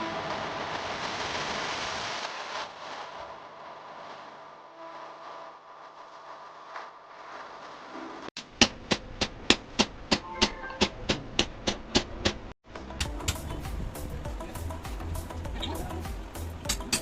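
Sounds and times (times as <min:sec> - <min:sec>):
sharp evenly spaced clicks: 0:16.2 - 0:17.0.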